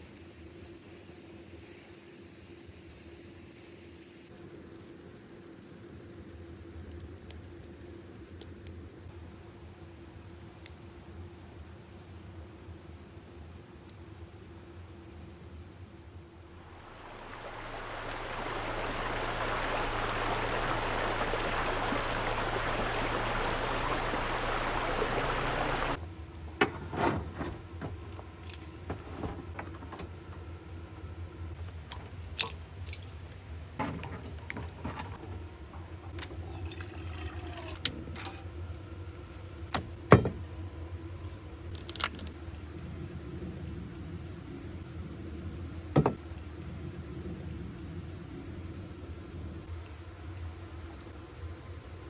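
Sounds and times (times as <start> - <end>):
steady rushing hiss: 0.0 - 9.2, 16.2 - 26.5.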